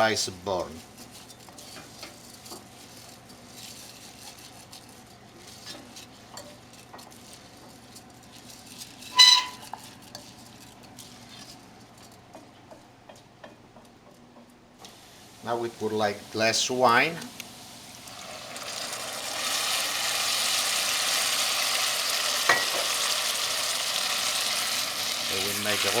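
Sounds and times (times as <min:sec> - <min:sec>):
rice sizzling in a pan: 0:00.0 - 0:11.6, 0:14.9 - 0:26.0
spoon scraping a pan: 0:08.9 - 0:10.5, 0:21.7 - 0:26.0.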